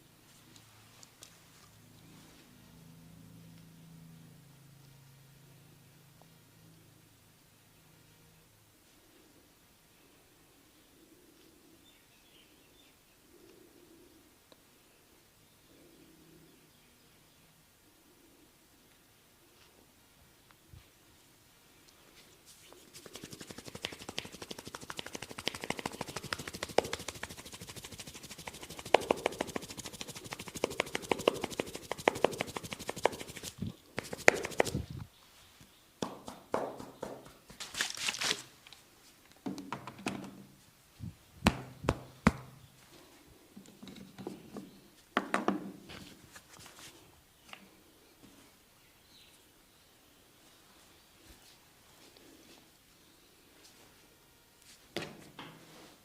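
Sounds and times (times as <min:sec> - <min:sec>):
hands rubbing skin: 0:22.4 - 0:34.9
hands striking rapidly: 0:23.0 - 0:34.8, 0:36.0 - 0:37.6
hand slaps: 0:23.2 - 0:27.4, 0:28.4 - 0:34.8, 0:36.0 - 0:37.5, 0:41.4 - 0:42.5.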